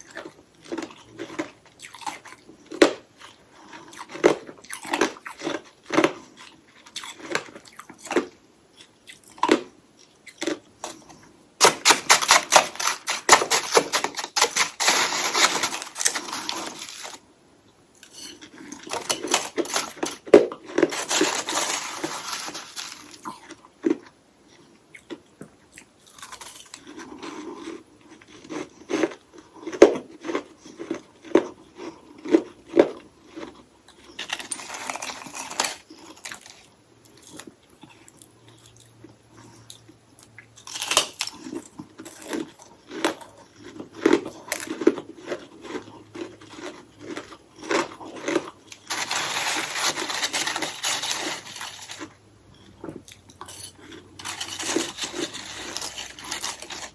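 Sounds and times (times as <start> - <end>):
crunching ice: 10.3 - 17.2, 18.0 - 24.0, 26.0 - 32.5, 33.3 - 37.9, 40.6 - 52.2, 53.4 - 56.9.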